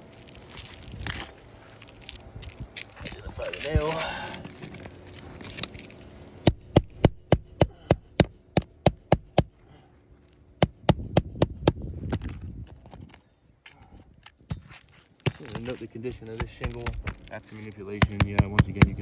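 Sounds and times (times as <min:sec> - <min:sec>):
high metallic ring: 0:05.4 - 0:12.4
hammer striking metal: 0:05.6 - 0:12.2.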